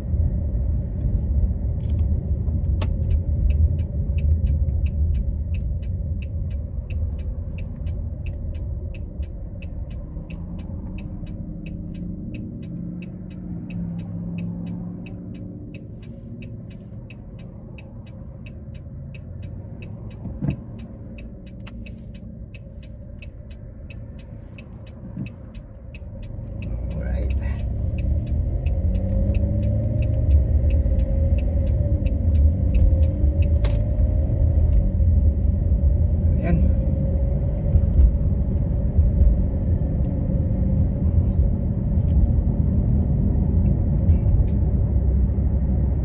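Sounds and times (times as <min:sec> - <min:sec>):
car interior rumble: 0:00.0 - 0:46.0
flasher relay ticking: 0:03.3 - 0:33.6.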